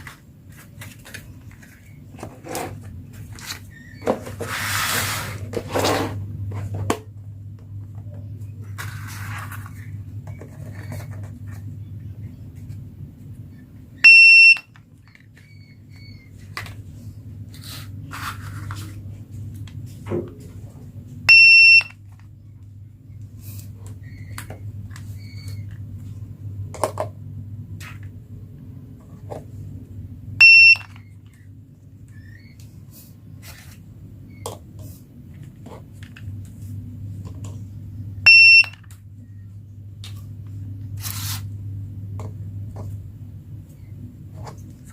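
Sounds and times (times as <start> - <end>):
low steady hum: 0.0 - 44.9
toy cash register beeping: 21.3 - 21.9, 30.4 - 31.0, 38.3 - 38.8.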